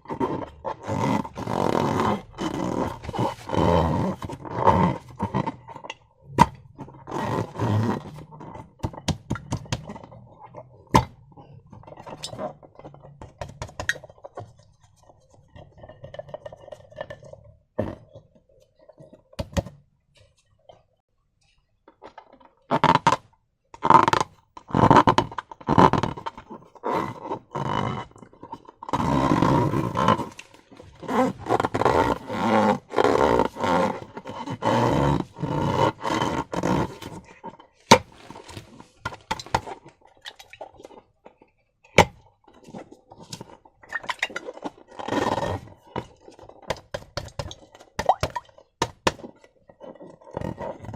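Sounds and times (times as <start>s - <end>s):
slime squelching: 27.4s - 45.1s.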